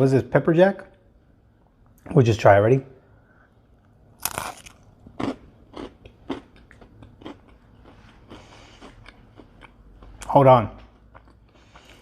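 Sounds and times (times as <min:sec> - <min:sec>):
person chewing crunchy pretzel: 0:04.2 - 0:12.0.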